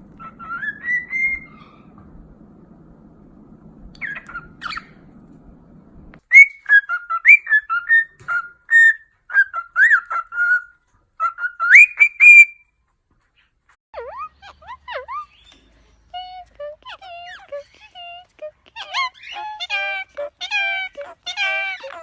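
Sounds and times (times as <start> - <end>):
parrot whistling: 0.2 - 2.0, 4.0 - 5.0, 6.3 - 12.6.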